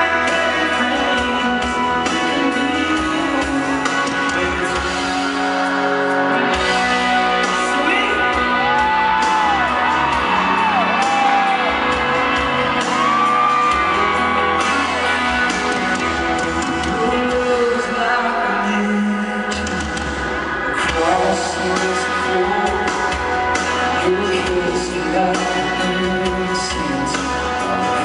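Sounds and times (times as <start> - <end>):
live country-rock band: 0.0 - 28.0
crowd whooping: 8.1 - 16.8.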